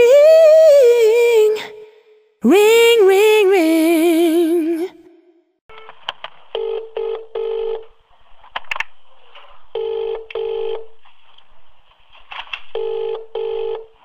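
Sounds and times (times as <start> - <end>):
telephone ringback tone: 6.6 - 7.8, 9.8 - 10.8, 12.8 - 14.0.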